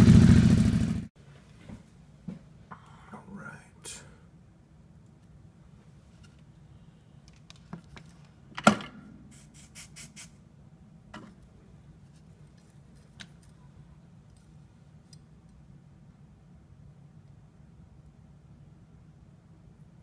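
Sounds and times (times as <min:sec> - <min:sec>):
faint low hum: 0:10.3 - 0:20.0.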